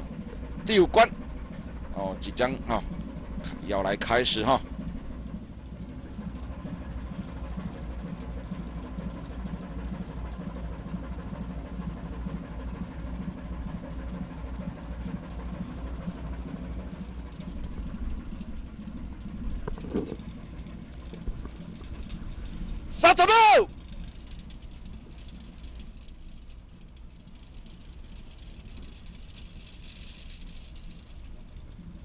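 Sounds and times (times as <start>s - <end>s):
ship engine humming: 0.0s - 32.0s
brief clatter: 19.6s - 20.4s.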